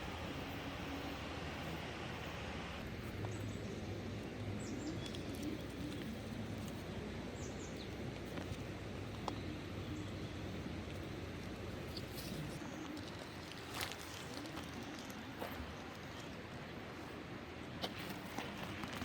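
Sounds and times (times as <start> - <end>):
birds chirping: 3.0 - 16.5.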